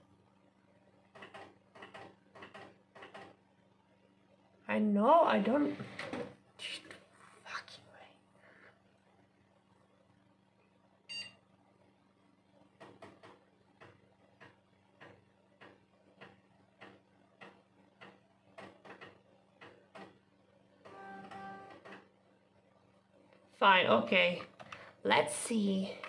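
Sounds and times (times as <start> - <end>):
low steady hum: 0.0 - 26.0
short electronic beep: 11.1 - 11.4.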